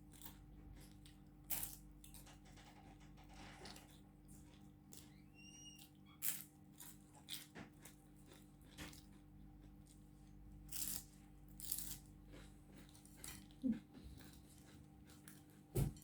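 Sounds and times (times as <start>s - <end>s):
flatbread crunching between teeth: 0.0s - 2.3s, 6.2s - 16.0s
brief high squeak: 5.1s - 6.2s
chewing: 5.8s - 15.7s.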